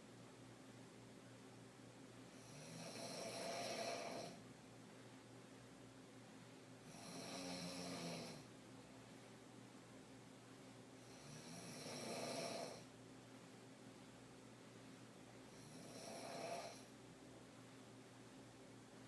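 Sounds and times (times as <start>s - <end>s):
quiet breathing: 2.2s - 4.4s, 6.4s - 8.6s, 11.0s - 13.0s, 15.3s - 17.0s
woman snoring: 2.3s - 4.4s, 6.8s - 8.5s, 11.0s - 12.9s, 15.5s - 16.9s.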